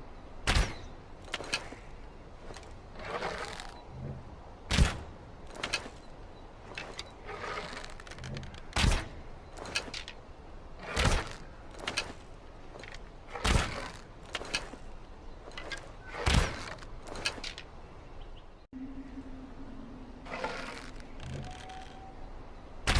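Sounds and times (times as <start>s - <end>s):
longbow shot thwacks: 0.5s - 1.5s, 8.8s - 9.2s, 13.3s - 14.0s.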